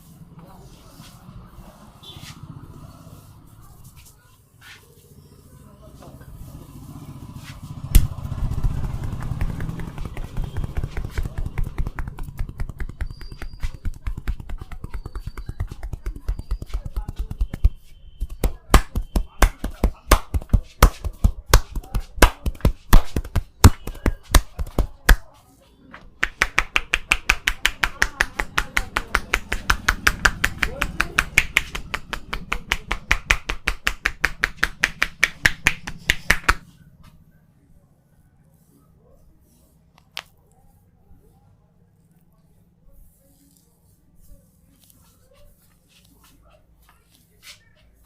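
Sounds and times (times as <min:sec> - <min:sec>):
hands slapping body in massage: 0:07.4 - 0:25.4, 0:26.0 - 0:36.7.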